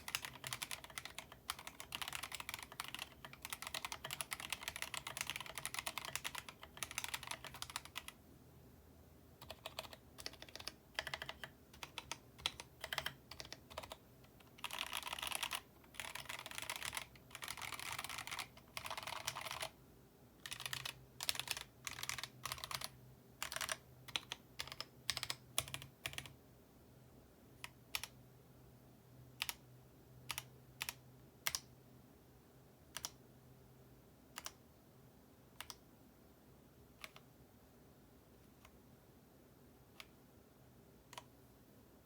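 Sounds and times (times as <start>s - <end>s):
mechanical keyboard typing: 0.0s - 8.2s, 9.4s - 19.7s, 20.4s - 26.4s, 27.6s - 28.2s, 29.4s - 29.6s, 30.3s - 31.7s, 35.6s - 35.8s, 37.0s - 37.3s.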